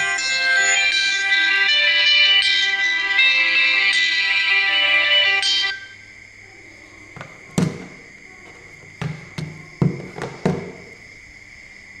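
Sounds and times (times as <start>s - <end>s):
handling taps and knocks: 7.2s - 11.0s.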